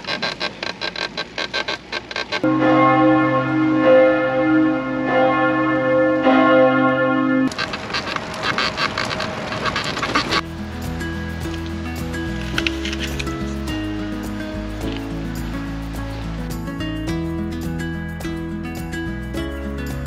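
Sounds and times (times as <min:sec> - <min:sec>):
ringing bell tones: 0:02.4 - 0:07.5.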